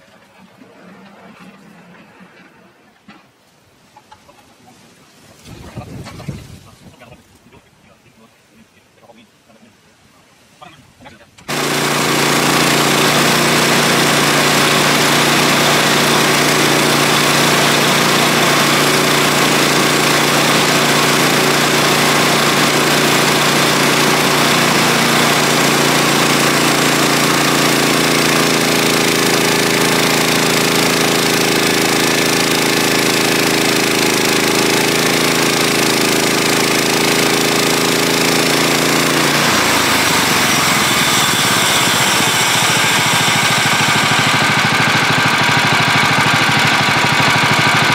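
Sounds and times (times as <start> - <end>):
engine drone: 11.4 - 47.9
sawmill running: 11.4 - 47.9.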